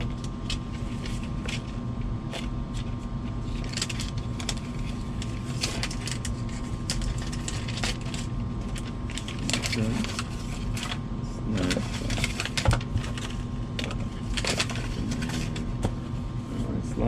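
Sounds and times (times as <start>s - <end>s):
background hum: 0.0s - 17.0s
plastic packaging crinkling: 3.3s - 11.0s, 11.6s - 15.6s.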